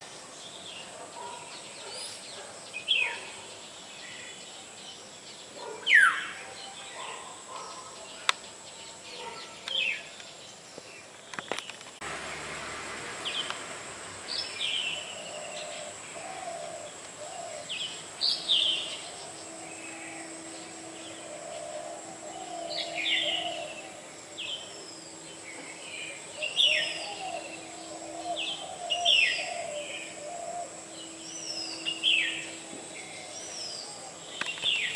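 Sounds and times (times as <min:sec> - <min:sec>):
bird calling sharp down-slurred calls: 0:14.4 - 0:34.9.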